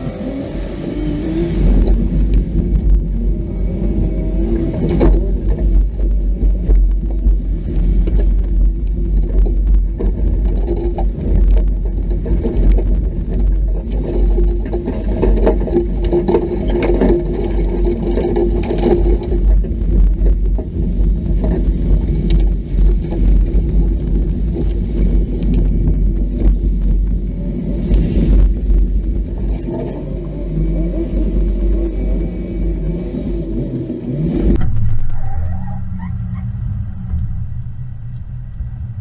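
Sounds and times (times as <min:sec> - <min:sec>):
off-road vehicle engine rumble: 0:00.0 - 0:39.0
rattling and knocking: 0:04.0 - 0:30.1.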